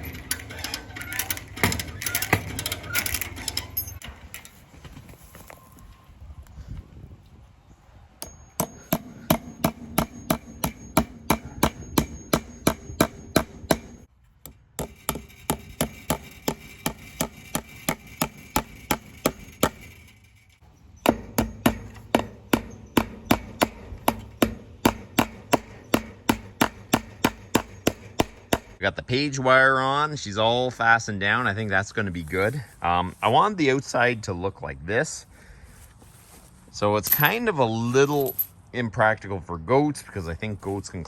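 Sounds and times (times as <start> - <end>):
hammer striking staples into wood: 8.6 - 19.9, 21.0 - 28.8.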